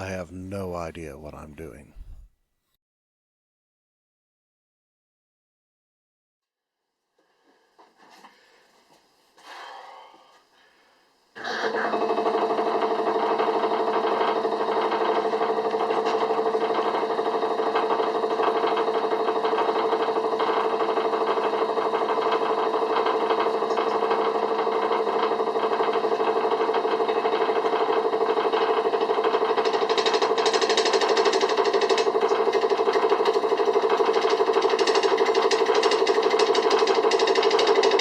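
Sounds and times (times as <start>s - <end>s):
lathe clatter: 28.5s - 38.0s.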